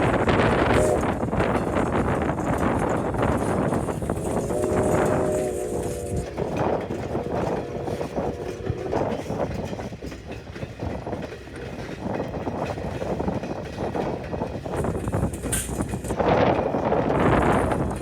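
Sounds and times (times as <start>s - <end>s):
train wheels knocking over rail joints: 0.0s - 18.0s.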